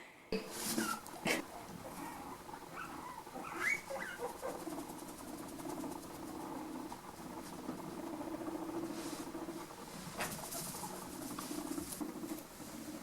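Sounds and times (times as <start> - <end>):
guinea pig buzzing purr: 0.5 - 13.0
guinea pig squeaks: 1.9 - 7.6.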